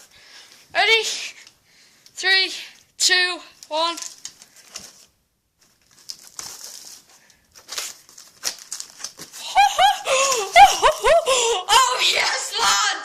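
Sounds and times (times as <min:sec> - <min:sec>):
cardboard packaging being torn: 0:04.0 - 0:09.4
high-pitched excited voice: 0:09.5 - 0:13.0.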